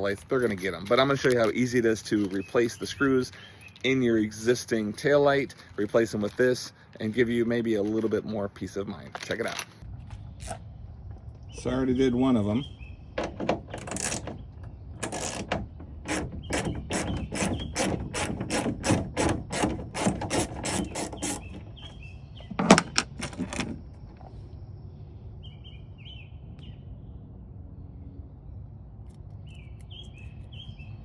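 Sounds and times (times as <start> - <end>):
birds chirping faintly: 0.0 - 31.0
ratchet wrench clicking: 15.0 - 21.6.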